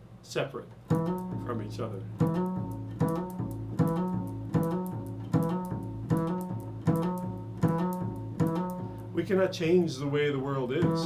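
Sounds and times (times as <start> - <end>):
plucked string instrument chord: 0.9 - 9.9, 10.6 - 11.0.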